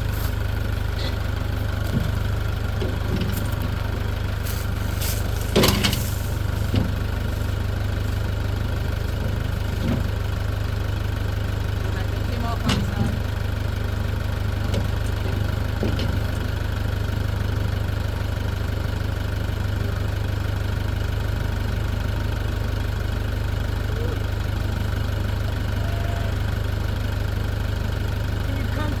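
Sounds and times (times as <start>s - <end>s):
tractor engine idling: 0.0s - 29.0s.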